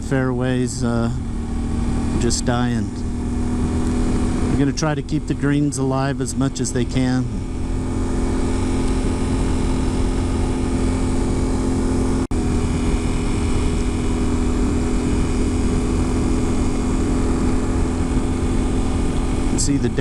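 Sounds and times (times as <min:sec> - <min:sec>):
motorcycle engine cruising: 0:00.0 - 0:20.0
wind and road noise: 0:00.0 - 0:20.0.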